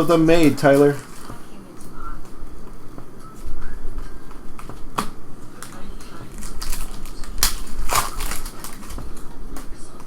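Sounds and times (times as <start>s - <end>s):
card wrappers crinkling: 5.6s - 9.4s.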